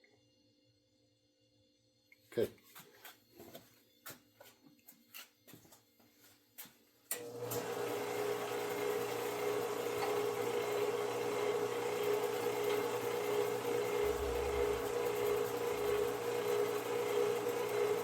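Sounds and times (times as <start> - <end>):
small power tool whining: 7.2 - 18.0.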